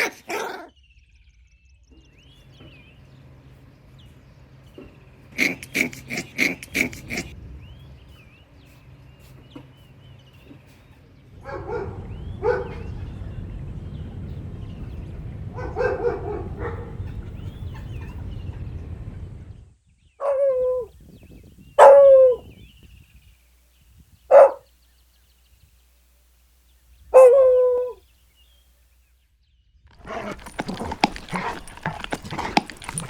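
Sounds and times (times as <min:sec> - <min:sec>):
faint birdsong chirps: 0:00.4 - 0:33.0
puppies yipping and barking: 0:24.3 - 0:24.6, 0:30.0 - 0:33.0.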